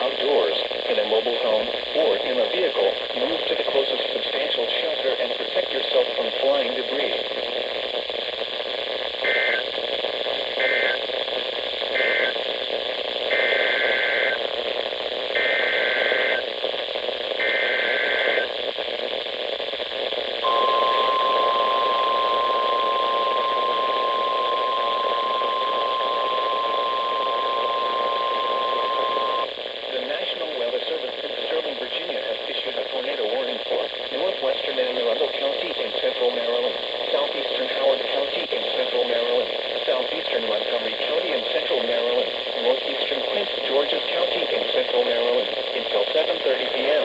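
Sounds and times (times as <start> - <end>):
radio static: 0.0 - 47.0
steady warning alarm tone: 9.2 - 9.6, 10.6 - 11.0, 12.0 - 12.4, 13.3 - 14.4, 15.4 - 16.4, 17.4 - 18.5, 20.4 - 29.5.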